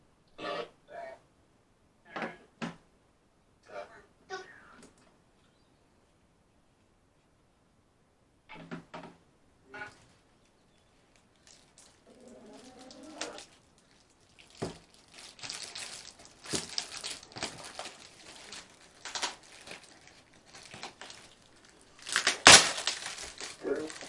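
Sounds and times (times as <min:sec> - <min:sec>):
packaging rustling and crinkling: 0:10.8 - 0:24.0.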